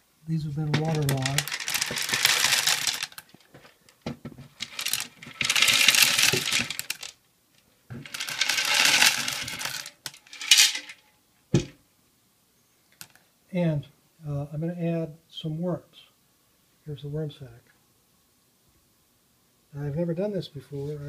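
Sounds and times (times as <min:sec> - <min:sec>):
clay pebbles pouring and rattling: 0:00.6 - 0:03.8, 0:04.5 - 0:07.1, 0:08.0 - 0:11.0.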